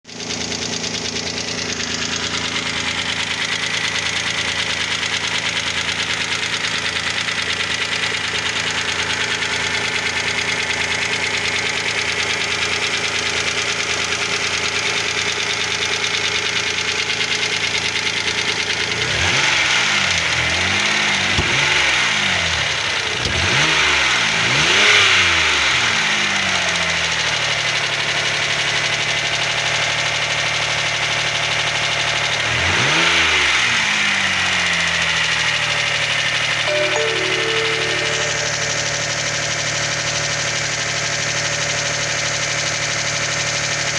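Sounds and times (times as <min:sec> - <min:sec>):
engine revving: 0:19.0 - 0:26.2
engine idling with a knock: 0:21.4 - 0:22.0.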